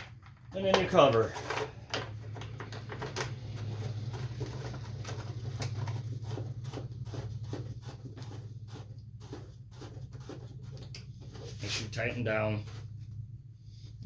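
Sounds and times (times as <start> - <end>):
plastic cover clicks and rattles: 0.0 - 3.6
steady low hum: 0.2 - 14.0.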